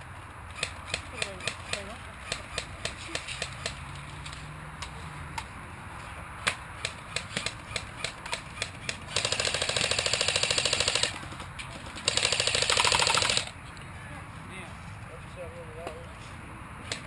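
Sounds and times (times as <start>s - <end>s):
airsoft gun full-auto bursts: 6.8s - 11.2s, 12.0s - 13.5s.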